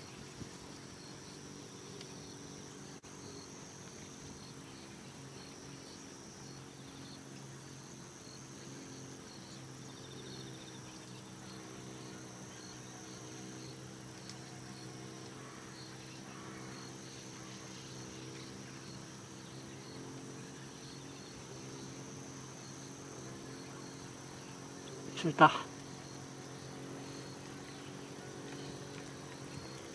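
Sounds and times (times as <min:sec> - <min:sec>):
insect high trill: 0:25.1 - 0:25.8.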